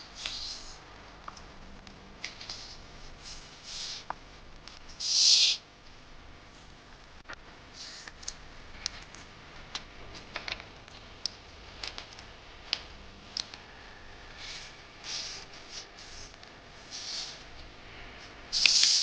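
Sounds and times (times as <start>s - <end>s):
paper creasing clicks: 18.6s - 19.0s.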